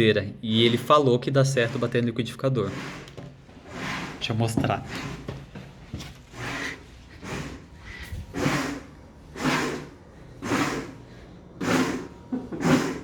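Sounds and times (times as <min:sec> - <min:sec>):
blender motor whirring: 0:11.6 - 0:13.0.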